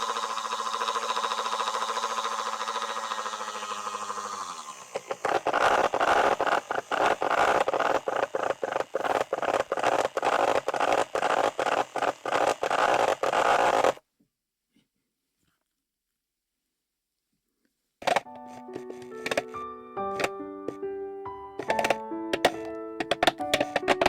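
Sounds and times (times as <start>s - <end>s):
washing machine motor humming: 0.0s - 10.3s.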